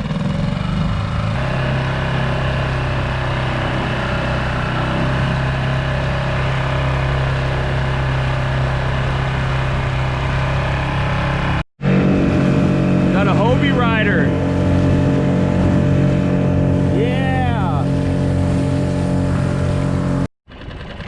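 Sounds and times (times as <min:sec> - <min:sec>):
outboard motor running: 0:00.0 - 0:21.0.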